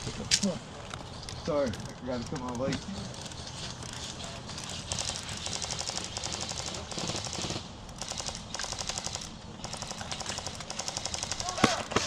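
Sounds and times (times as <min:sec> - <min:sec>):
airsoft guns firing bursts: 0:04.6 - 0:12.0.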